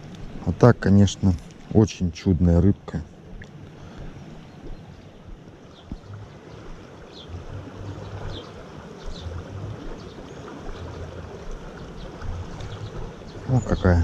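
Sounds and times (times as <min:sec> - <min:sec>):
low rumbling on microphone: 0:00.0 - 0:14.0
river water rushing over rapids: 0:05.5 - 0:14.0.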